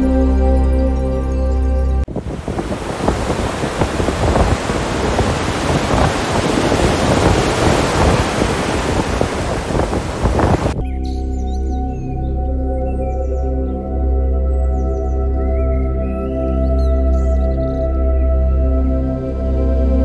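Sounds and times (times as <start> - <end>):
music: 0.0 - 2.1, 10.8 - 20.0
loud outdoor rushing noise: 2.1 - 10.8.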